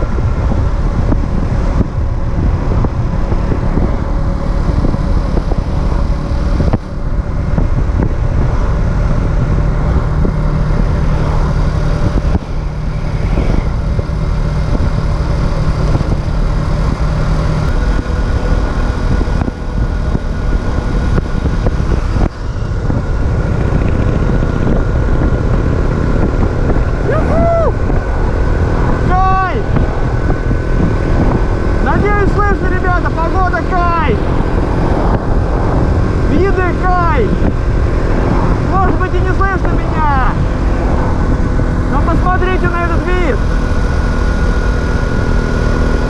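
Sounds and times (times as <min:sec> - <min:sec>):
moped engine running: 0:00.0 - 0:46.0
wind noise on microphone: 0:00.0 - 0:46.0
rising-and-falling tones: 0:09.6 - 0:18.5.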